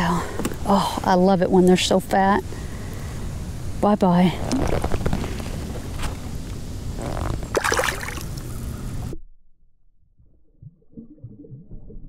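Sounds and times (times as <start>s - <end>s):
water splashing and sloshing: 7.2s - 8.7s
fish splashing into water: 7.5s - 8.5s.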